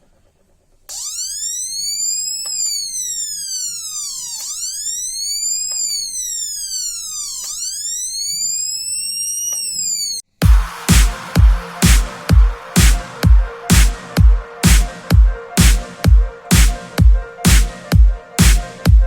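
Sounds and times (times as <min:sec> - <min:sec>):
electronic siren wail: 0:00.9 - 0:10.3.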